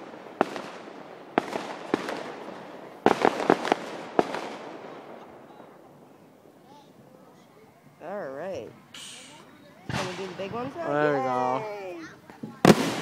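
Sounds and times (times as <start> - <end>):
fireworks bangs with echoes: 0.0 - 5.8, 9.8 - 10.9, 12.4 - 13.0.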